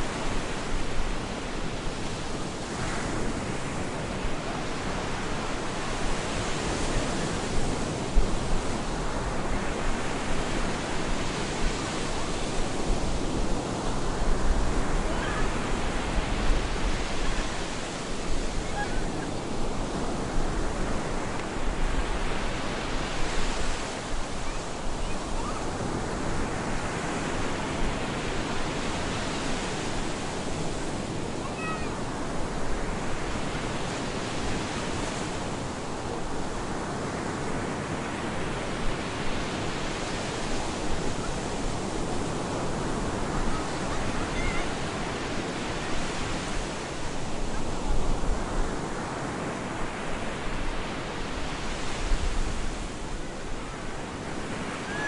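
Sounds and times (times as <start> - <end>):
continuous rush of water: 0.0 - 55.0
waves breaking: 0.0 - 55.0.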